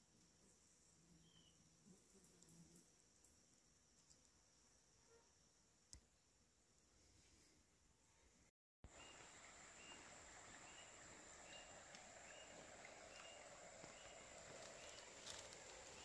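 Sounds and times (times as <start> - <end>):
high insect whine: 8.9 - 16.0.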